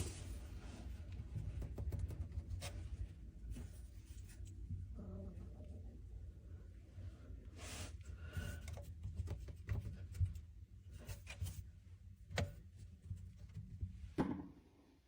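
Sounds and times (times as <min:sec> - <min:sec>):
rubbing and scuffing handling: 0:00.0 - 0:01.2.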